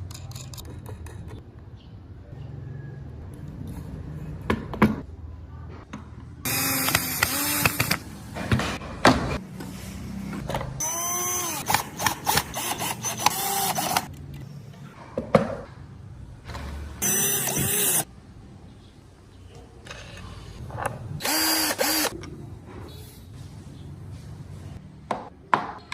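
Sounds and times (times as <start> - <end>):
power tool cutting wood: 21.2 - 22.1.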